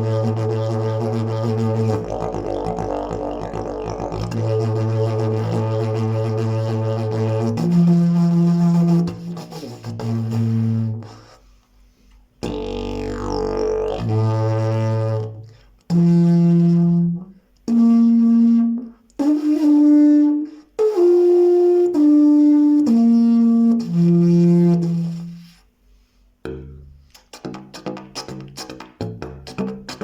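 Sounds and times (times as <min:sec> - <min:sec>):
didgeridoo notes: 0:00.0 - 0:11.3, 0:12.4 - 0:18.8, 0:26.4 - 0:30.0.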